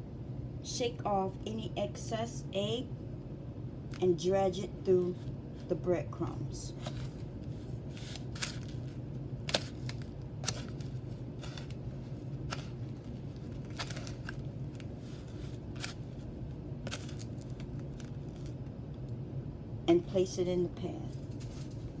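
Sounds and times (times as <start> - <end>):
steady low hum: 0.0 - 22.0
breadcrumbs rustling and crunching: 6.7 - 18.7.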